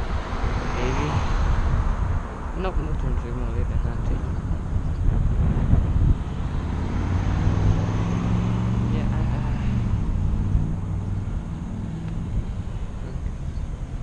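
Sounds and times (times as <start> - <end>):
road noise: 0.0 - 14.0
vehicle engine running: 3.5 - 14.0.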